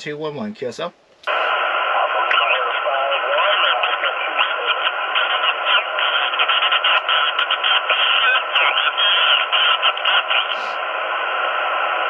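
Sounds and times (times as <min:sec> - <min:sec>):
radio static hiss: 0:01.2 - 0:12.0
weak radio voice: 0:01.3 - 0:10.8.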